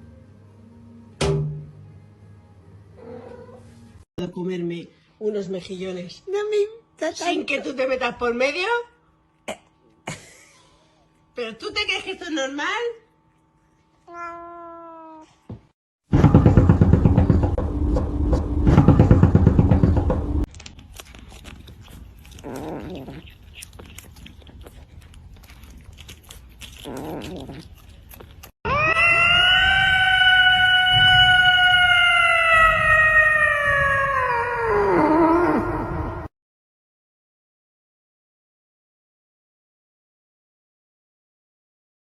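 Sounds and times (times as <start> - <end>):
long animal howl: 28.7 - 36.3.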